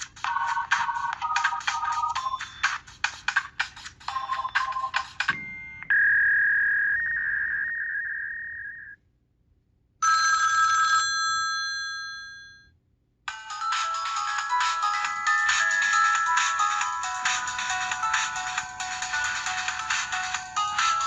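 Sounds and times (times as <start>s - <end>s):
pulsing phone ringtone: 0.2s - 2.9s, 4.1s - 9.0s, 10.0s - 12.7s, 13.3s - 21.0s
held ringing tone: 4.1s - 9.0s.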